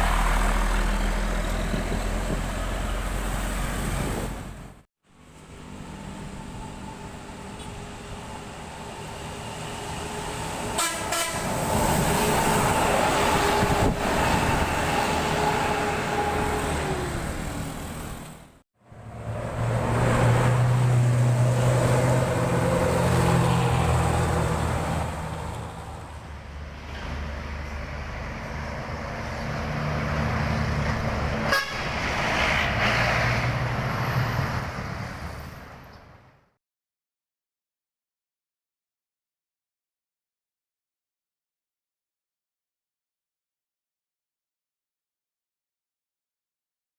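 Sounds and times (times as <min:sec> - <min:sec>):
bus diesel engine passing: 0:00.0 - 0:36.5
bus horn held tones: 0:10.7 - 0:11.6, 0:31.5 - 0:31.9.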